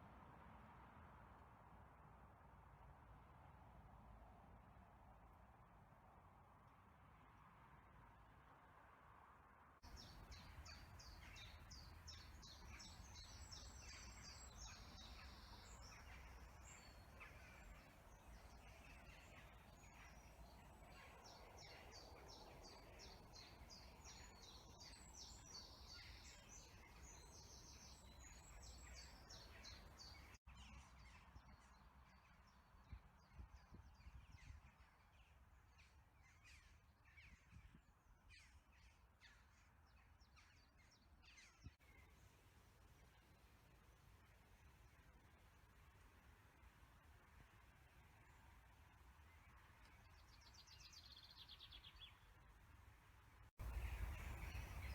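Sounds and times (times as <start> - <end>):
birds chirping and trilling: 9.9 - 32.3, 53.6 - 54.9
low wind rumble: 53.6 - 54.9.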